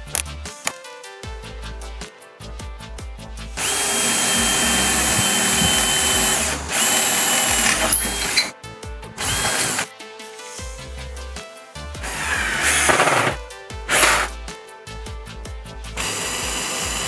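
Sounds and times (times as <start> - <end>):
background music with beat: 0.0 - 17.0
electric drill whining: 3.6 - 8.5, 9.2 - 9.9, 12.0 - 14.3, 16.0 - 17.0.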